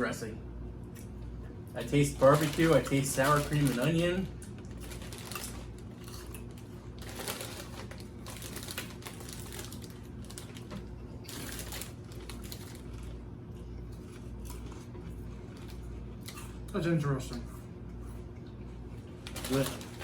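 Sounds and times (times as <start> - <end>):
chip bag rustling: 1.8 - 13.2, 19.2 - 20.0
crunching potato chips: 1.8 - 13.2, 19.2 - 20.0.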